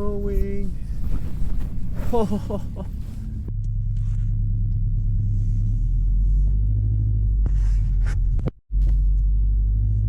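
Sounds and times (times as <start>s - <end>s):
car engine low rumble: 0.0s - 10.0s.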